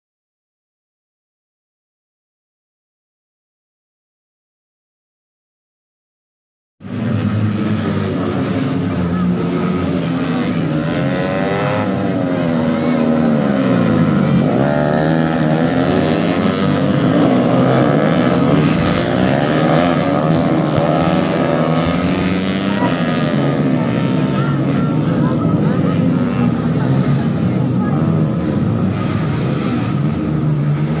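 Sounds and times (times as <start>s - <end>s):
racing motorcycle engines revving: 6.8s - 31.0s.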